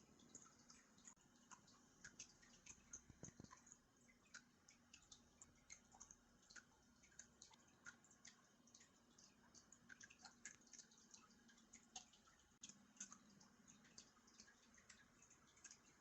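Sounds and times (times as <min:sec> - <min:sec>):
faint small ticks: 0:00.0 - 0:16.0.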